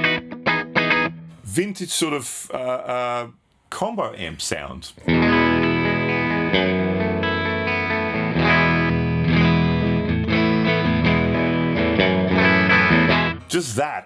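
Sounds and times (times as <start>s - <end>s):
electric guitar chords and notes: 0.0s - 1.4s, 5.1s - 13.8s.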